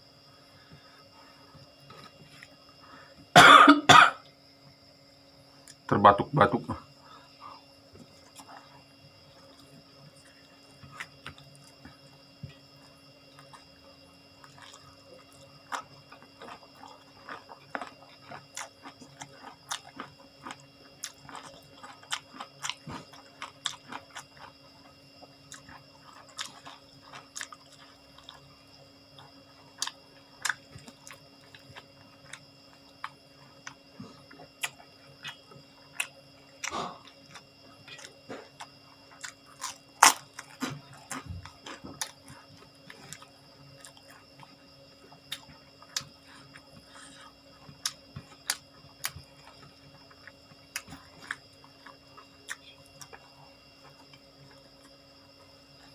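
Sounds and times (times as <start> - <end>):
faint hum: 0.0 - 55.9
crisp chewing crunches: 8.0 - 55.1.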